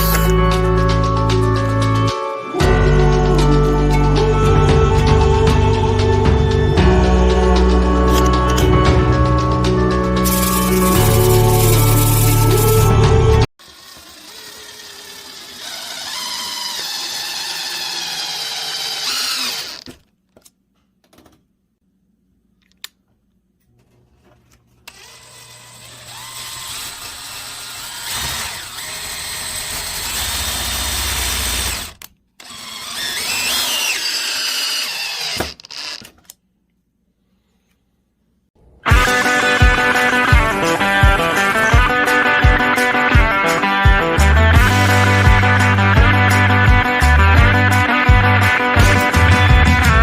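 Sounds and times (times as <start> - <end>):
power drill whining: 0.0 - 0.9, 10.2 - 13.0, 13.6 - 20.0, 24.9 - 36.2, 38.9 - 42.8.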